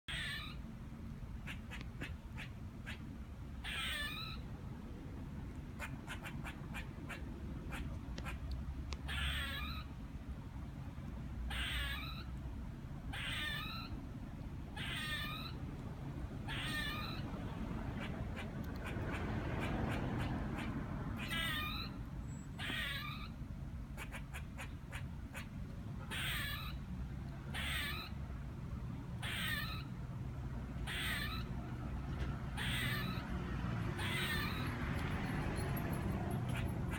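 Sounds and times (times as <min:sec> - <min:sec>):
squirrel wavering cries: 0:00.1 - 0:00.8, 0:01.4 - 0:10.2, 0:11.4 - 0:31.7, 0:32.4 - 0:36.9
squirrel chattering ticks: 0:01.4 - 0:04.4, 0:05.5 - 0:09.9, 0:14.7 - 0:22.0, 0:33.9 - 0:36.9.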